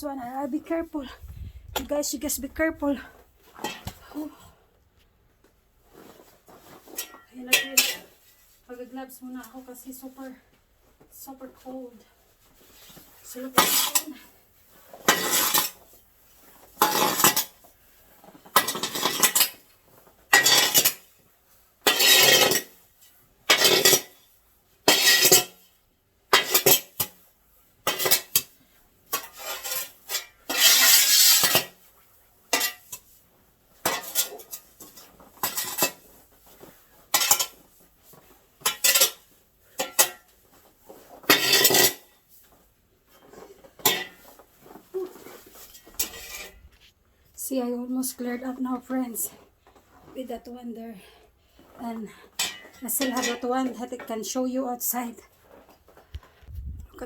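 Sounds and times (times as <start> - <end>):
snow shovel scraping: 12.7 - 17.6, 21.8 - 22.8, 29.1 - 31.8, 40.8 - 42.2.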